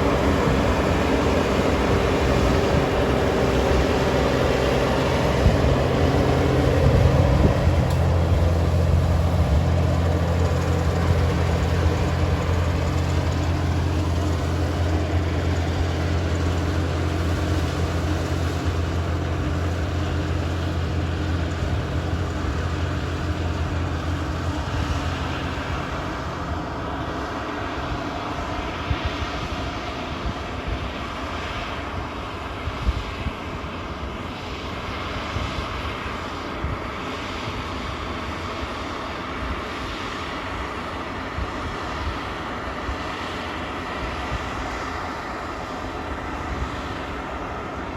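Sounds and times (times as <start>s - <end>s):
machinery rushing noise: 0.0s - 28.6s
diesel engine hum: 0.0s - 32.5s.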